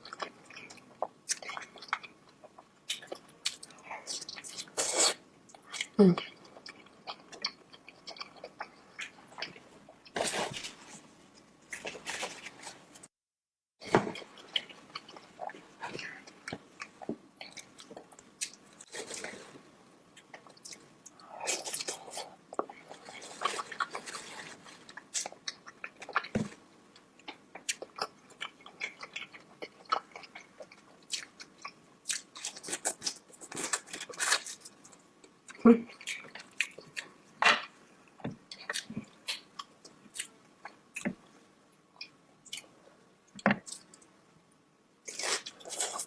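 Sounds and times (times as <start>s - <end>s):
person chewing crunchy food: 20.2s - 26.6s, 27.2s - 37.1s, 45.1s - 46.0s.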